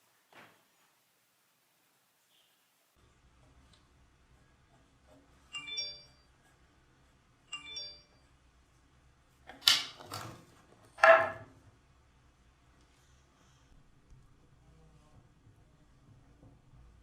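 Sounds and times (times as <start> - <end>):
bright electronic chime: 5.5 - 6.2, 7.5 - 8.2.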